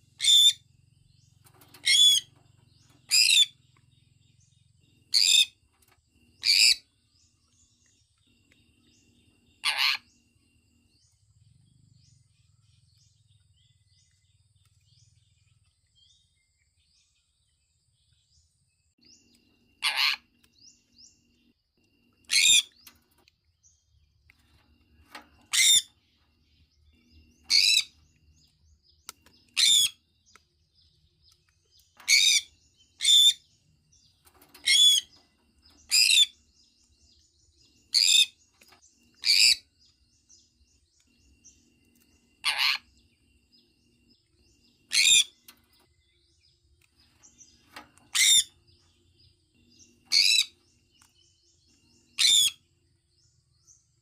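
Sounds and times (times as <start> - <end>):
parrot shrill calls: 9.6 - 10.0, 19.8 - 20.2, 42.4 - 42.8, 44.9 - 45.3, 48.1 - 48.5.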